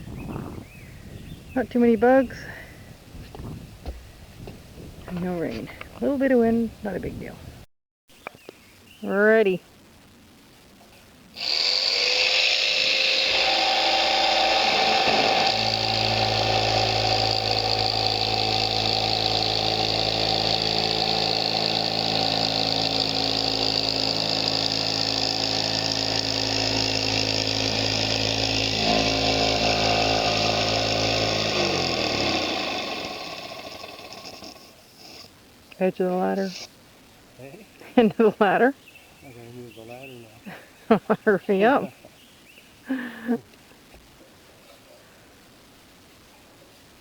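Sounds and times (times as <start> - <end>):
power tool whining: 11.4 - 35.3.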